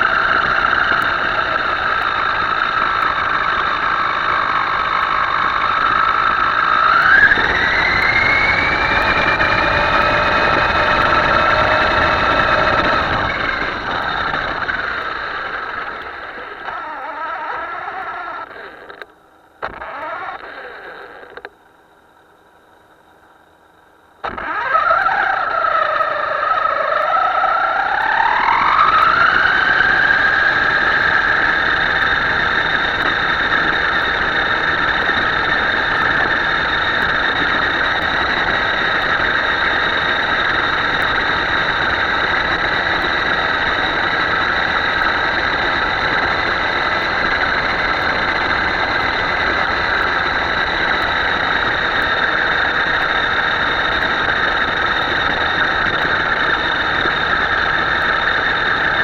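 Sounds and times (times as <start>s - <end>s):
toy boat motor whining: 0.0s - 19.1s, 19.8s - 21.5s, 24.3s - 59.0s
steady rushing noise: 0.0s - 21.5s, 24.2s - 59.0s.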